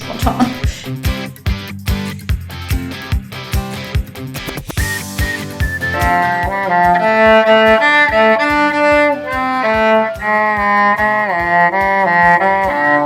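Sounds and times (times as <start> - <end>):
steady beat: 0.0 - 13.0
bowed string melody: 4.8 - 13.0.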